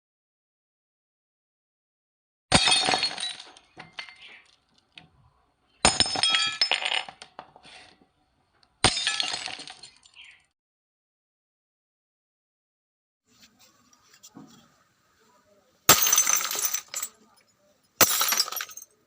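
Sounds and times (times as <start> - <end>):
glass shattering: 2.5 - 4.6, 5.8 - 7.4, 8.8 - 10.3, 15.9 - 17.4, 18.0 - 19.0
glass pieces tinkling: 15.9 - 19.0.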